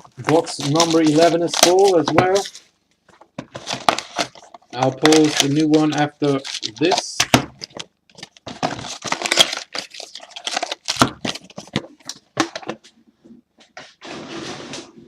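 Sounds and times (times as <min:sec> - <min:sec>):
plastic packaging crinkling and tearing: 0:00.0 - 0:02.7, 0:03.4 - 0:12.7.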